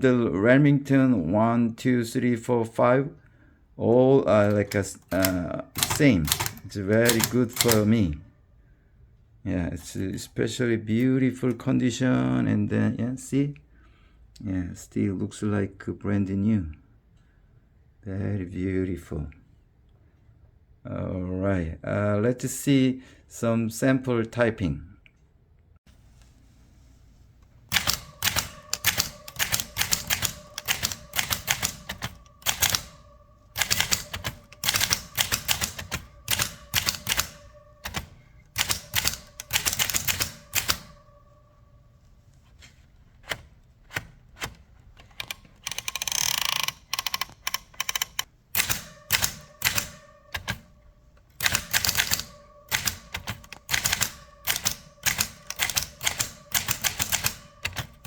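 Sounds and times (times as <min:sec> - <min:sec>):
typewriter carriage return: 0:04.3 - 0:08.1, 0:27.6 - 0:41.2, 0:43.1 - 0:58.0
typewriter key strikes: 0:04.5 - 0:07.9, 0:27.7 - 0:41.0, 0:43.2 - 0:50.7, 0:51.4 - 0:58.0.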